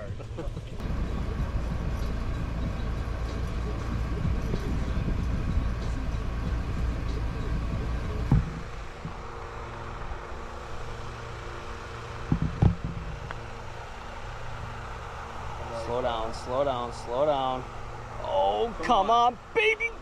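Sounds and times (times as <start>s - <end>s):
golf cart rumbling: 0.0s - 20.0s
sharp knocks: 8.2s - 9.2s, 12.2s - 13.4s.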